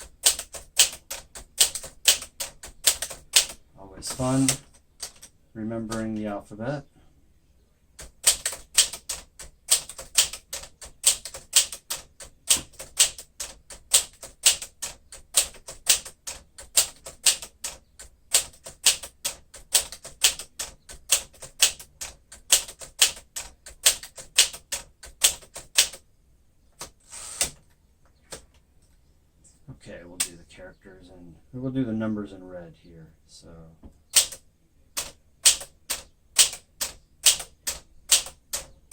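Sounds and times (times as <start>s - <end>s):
manual typewriter key strikes: 0.0s - 5.3s, 8.0s - 26.0s, 34.1s - 34.4s, 35.0s - 38.9s.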